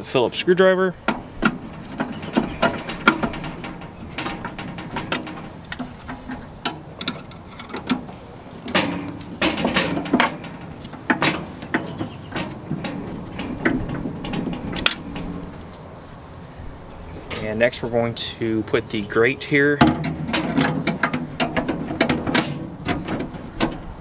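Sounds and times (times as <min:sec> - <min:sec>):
clicks and taps of parts: 0:01.1 - 0:15.8.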